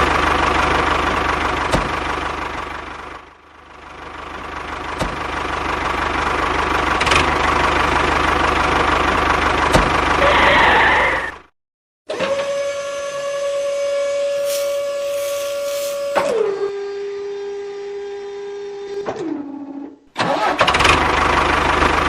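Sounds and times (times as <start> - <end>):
engine running: 0.0 - 11.3, 14.2 - 17.2, 20.3 - 22.0.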